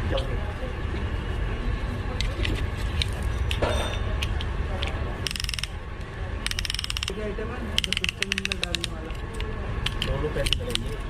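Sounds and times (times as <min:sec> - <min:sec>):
steady low hum: 0:00.0 - 0:11.0
ratchet clicking: 0:04.3 - 0:05.8, 0:06.4 - 0:07.2, 0:07.8 - 0:11.0.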